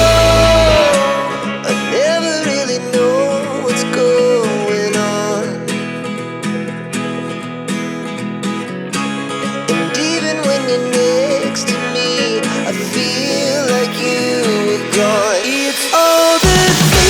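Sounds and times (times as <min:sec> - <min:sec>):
wavering melody line: 0:00.0 - 0:01.8
strummed acoustic guitar: 0:00.0 - 0:17.0.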